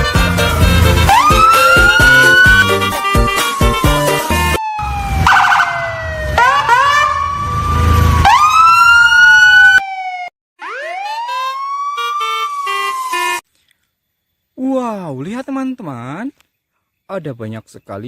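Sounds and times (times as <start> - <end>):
siren-like electronic wails: 0.3 - 13.4.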